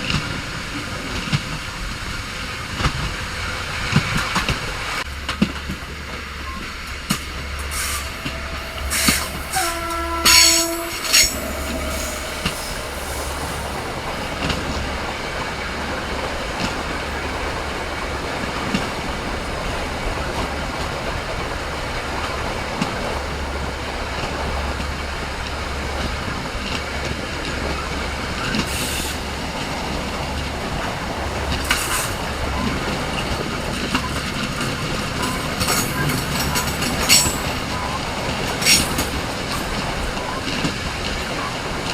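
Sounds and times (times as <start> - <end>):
train rumbling on rails: 0.0 - 41.9
train wheels clacking: 0.0 - 41.9
train horn blast: 7.5 - 14.9.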